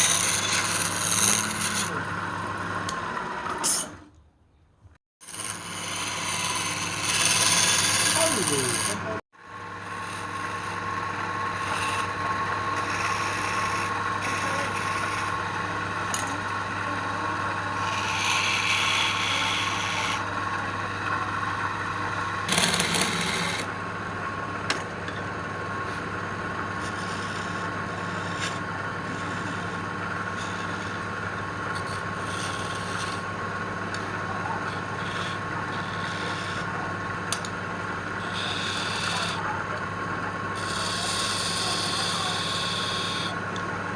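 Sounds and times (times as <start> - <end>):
wood lathe humming: 0.0 - 4.0, 5.2 - 43.9
tool hissing on wood: 5.3 - 9.1, 17.9 - 20.2, 31.8 - 33.2, 34.7 - 36.7, 38.2 - 39.5, 40.6 - 43.4.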